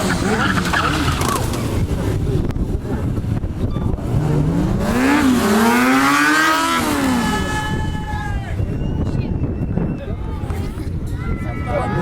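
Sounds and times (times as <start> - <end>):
motorcycle engine revving: 0.0 - 8.0.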